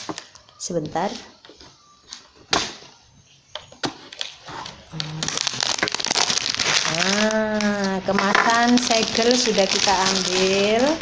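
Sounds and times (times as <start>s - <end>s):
plastic wrap crinkling: 3.5s - 11.0s
woman speaking: 6.9s - 11.0s.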